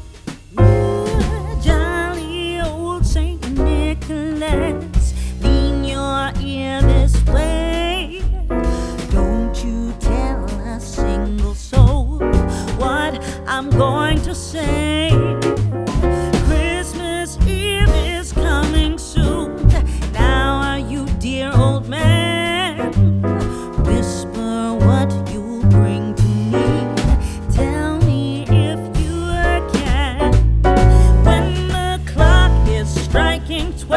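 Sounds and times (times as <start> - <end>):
bass line: 0.0 - 33.9
piano: 0.0 - 33.9
person singing: 0.6 - 4.9, 23.7 - 33.9.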